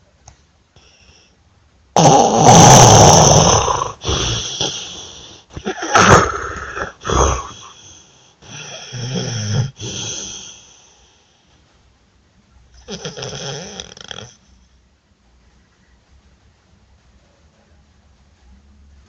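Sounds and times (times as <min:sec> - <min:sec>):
person snoring and snorting: 0:02.0 - 0:10.8, 0:12.8 - 0:14.4.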